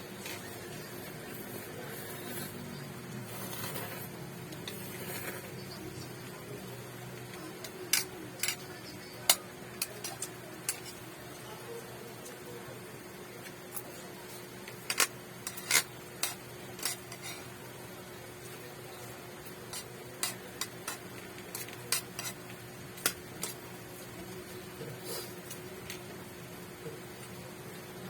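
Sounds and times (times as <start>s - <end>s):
faint hum: 0.0s - 28.0s
utensils clinking on a dish: 7.2s - 11.0s, 14.6s - 17.5s, 19.7s - 23.6s.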